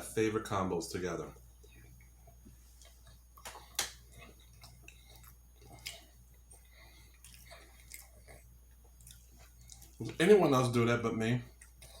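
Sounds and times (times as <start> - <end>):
chewing soft food: 1.3 - 12.0
wet mouth clicks and smacks: 2.7 - 10.0.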